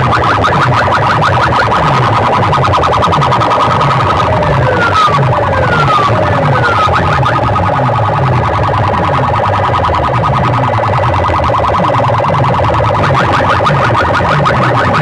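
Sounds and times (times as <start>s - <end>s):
electronic siren effect: 0.0s - 15.0s
rapid rising chirps: 0.0s - 15.0s
steady held tones: 0.0s - 15.0s.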